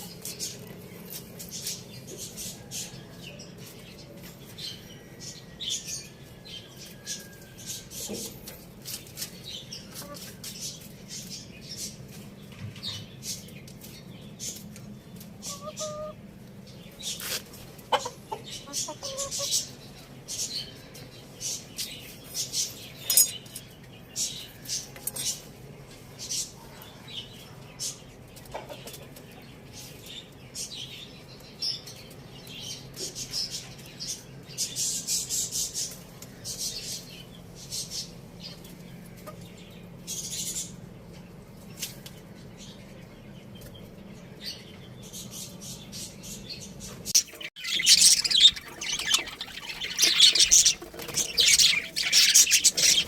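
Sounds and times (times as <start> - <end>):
small birds chirping: 0.0 - 25.5, 41.7 - 53.0.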